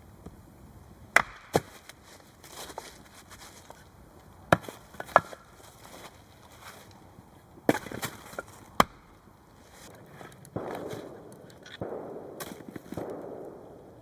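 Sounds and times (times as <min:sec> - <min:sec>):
wood being chopped: 0:01.1 - 0:02.0, 0:04.5 - 0:05.6, 0:07.6 - 0:09.2, 0:10.5 - 0:13.3.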